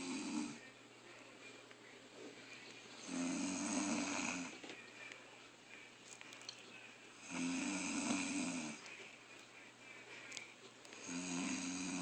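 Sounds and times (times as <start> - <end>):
person snoring: 0.0 - 0.6, 3.0 - 4.5, 7.2 - 8.8, 11.0 - 12.0
quiet breathing: 0.0 - 12.0.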